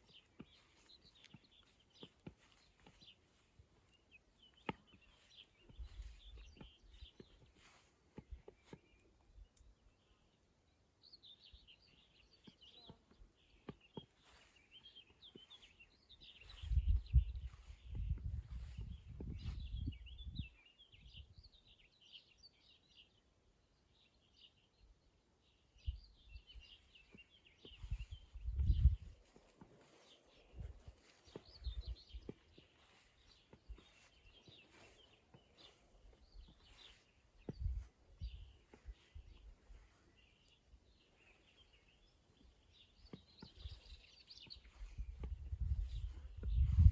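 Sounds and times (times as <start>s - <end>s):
songbirds twittering: 0.0s - 46.9s.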